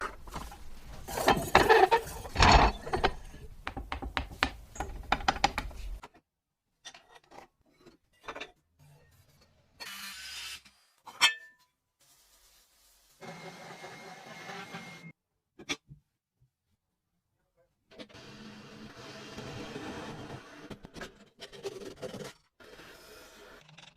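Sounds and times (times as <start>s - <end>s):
metal scraping and rubbing: 0.0s - 3.5s.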